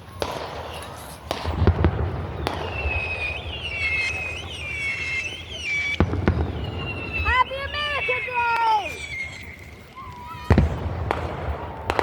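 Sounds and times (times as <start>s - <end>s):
fireworks bangs and pops: 0.0s - 12.0s
high wavering whistle: 2.1s - 10.5s.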